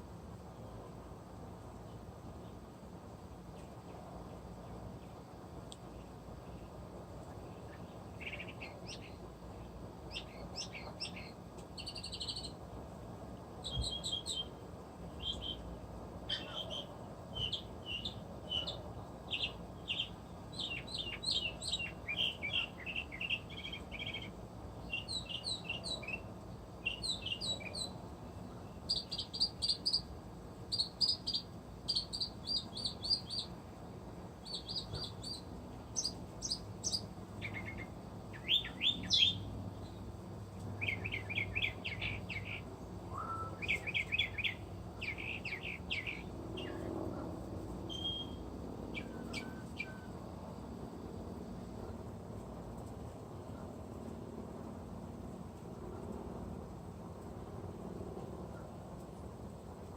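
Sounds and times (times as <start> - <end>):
mockingbird singing: 7.7 - 9.2, 10.1 - 12.6, 13.6 - 14.5, 15.2 - 15.7, 16.3 - 28.0, 28.7 - 30.1, 30.7 - 33.5, 34.4 - 40.0, 40.8 - 46.9, 47.9 - 50.1.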